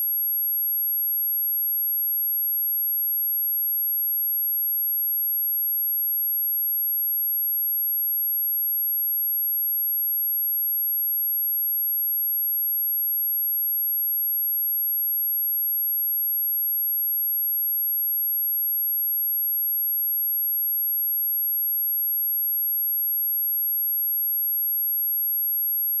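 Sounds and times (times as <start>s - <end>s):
high-pitched sine test tone: 21.6s - 26.0s.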